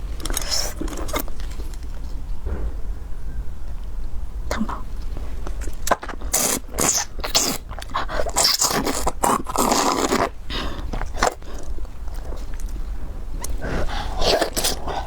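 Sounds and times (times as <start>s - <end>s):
crunching food being bitten: 0.0s - 2.0s, 5.0s - 15.0s.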